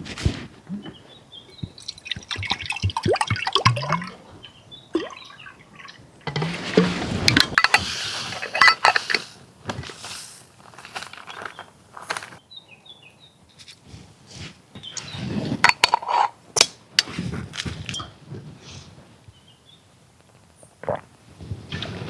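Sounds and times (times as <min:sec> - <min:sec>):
bird chirps: 0:00.7 - 0:06.0
knocks and clicks: 0:01.8 - 0:04.2
rustling: 0:06.2 - 0:12.4.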